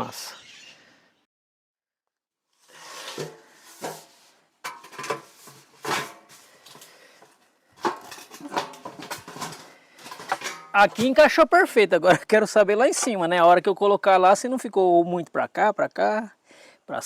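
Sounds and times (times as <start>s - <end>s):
scraping: 2.6s - 11.3s.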